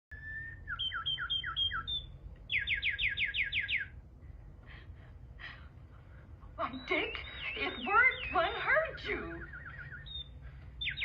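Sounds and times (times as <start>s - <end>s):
whistled bird calls: 0.1s - 4.0s, 6.7s - 11.0s.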